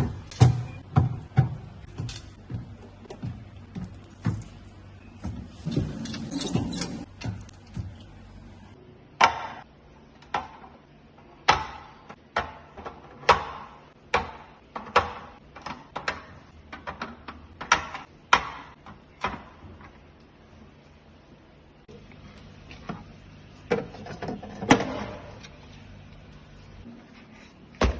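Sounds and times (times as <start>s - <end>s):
objects knocking on fridge shelves: 0.0s - 4.6s.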